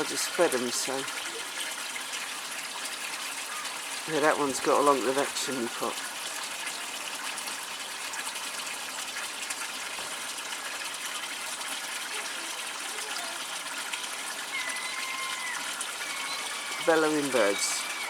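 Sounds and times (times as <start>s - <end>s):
gull chick whistling call: 14.4s - 18.0s
steady rushing hiss: 15.8s - 18.0s.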